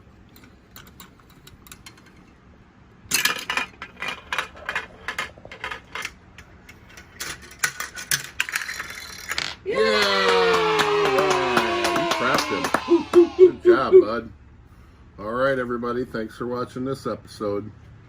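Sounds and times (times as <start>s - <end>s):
plastic game parts clattering: 3.1s - 6.2s, 6.8s - 9.6s.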